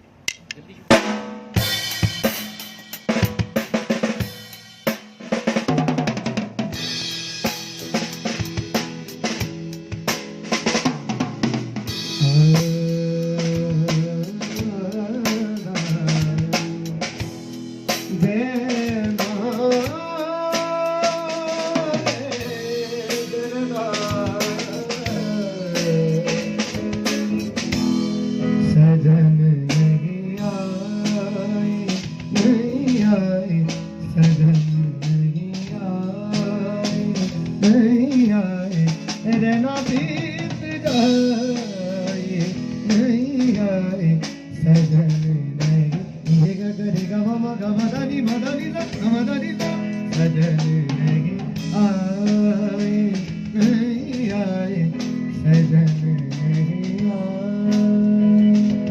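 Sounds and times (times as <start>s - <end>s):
bass: 0.0s - 58.9s
drum kit hits: 0.3s - 58.9s
guitar: 1.5s - 58.9s
person singing: 12.0s - 17.1s, 18.1s - 58.9s.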